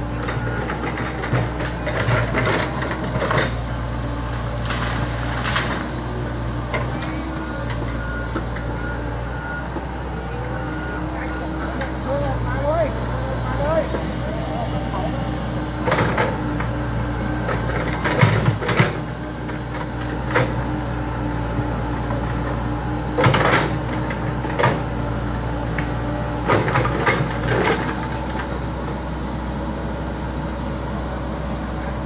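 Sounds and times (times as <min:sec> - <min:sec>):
excavator diesel engine running: 0:00.0 - 0:32.0
excavator bucket clanking: 0:00.2 - 0:03.6, 0:17.5 - 0:20.6, 0:23.1 - 0:24.9, 0:26.4 - 0:28.1.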